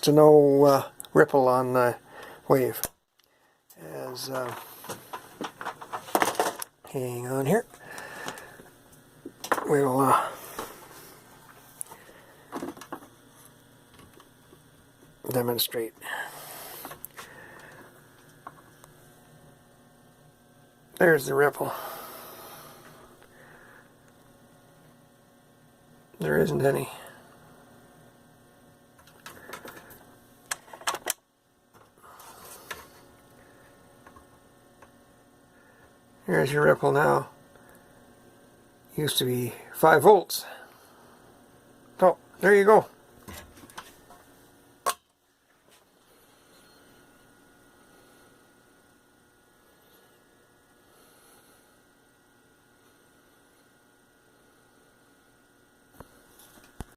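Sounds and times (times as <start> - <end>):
faint electrical hum: 0.0 - 56.9.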